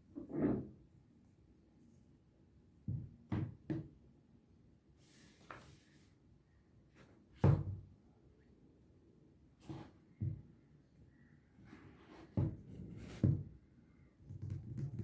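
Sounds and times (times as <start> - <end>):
scrape or rustle: 5.0 - 6.2.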